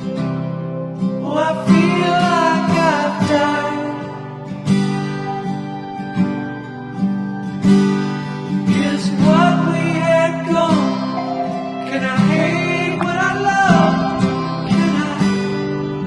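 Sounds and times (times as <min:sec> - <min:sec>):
strummed acoustic guitar: 0:00.0 - 0:16.0
person singing: 0:08.8 - 0:16.0.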